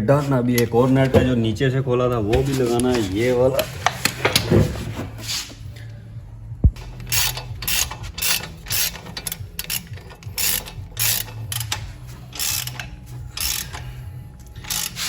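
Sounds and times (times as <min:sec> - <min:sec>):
ratchet wrench ratcheting: 0:06.8 - 0:15.0.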